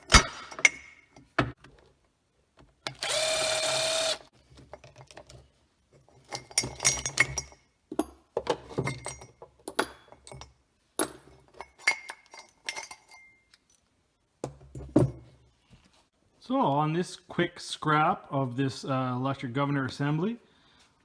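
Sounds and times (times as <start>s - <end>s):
metal parts clinking: 6.2s - 7.6s, 11.5s - 13.9s.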